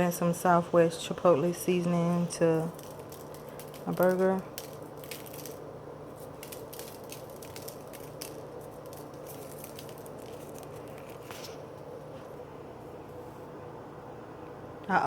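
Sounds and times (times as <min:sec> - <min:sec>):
steady low hum: 0:00.0 - 0:15.0
seasoning shaker rattling: 0:01.4 - 0:11.7.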